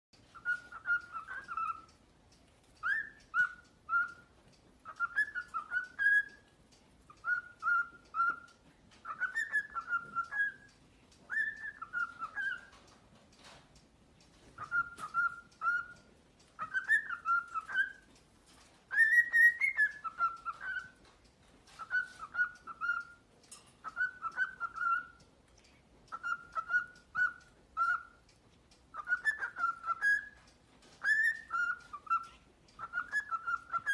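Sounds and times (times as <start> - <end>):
cockatiel whistling: 0.2 - 2.0, 2.8 - 12.9, 14.4 - 18.1, 18.8 - 21.1, 21.7 - 25.2, 26.1 - 28.3, 28.9 - 33.9.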